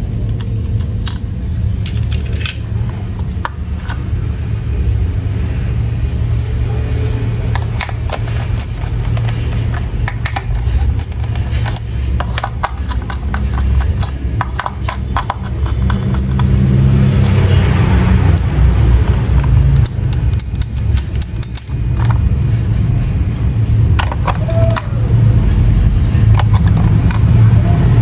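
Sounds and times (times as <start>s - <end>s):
low rumble: 0.0s - 28.0s
plastic toy parts rattling: 0.2s - 4.1s, 7.5s - 23.1s, 23.8s - 27.7s.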